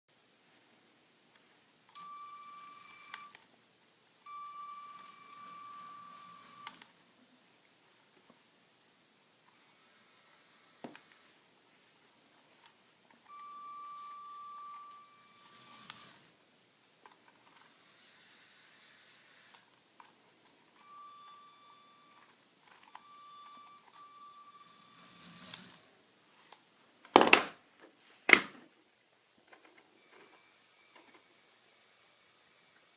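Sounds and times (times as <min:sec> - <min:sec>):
electric motor whining: 0:15.1 - 0:16.3.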